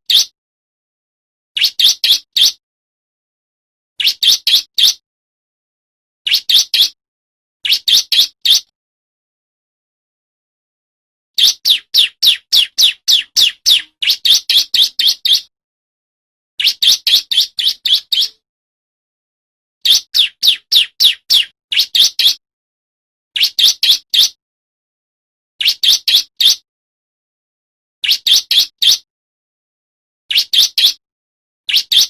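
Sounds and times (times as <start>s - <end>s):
bird singing: 1.6s - 2.6s, 6.3s - 7.0s, 7.6s - 8.7s, 11.4s - 15.5s, 16.6s - 18.4s, 19.8s - 22.4s
bird singing sharp notes: 11.4s - 15.5s.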